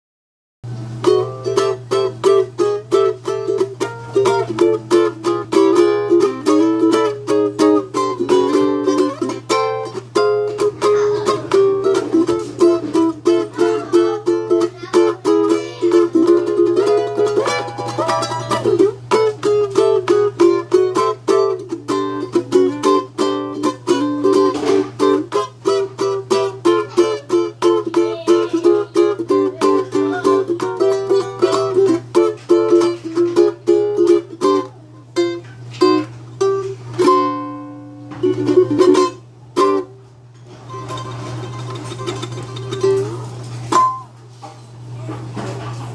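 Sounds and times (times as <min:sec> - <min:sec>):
ukulele strumming: 0:00.7 - 0:44.2.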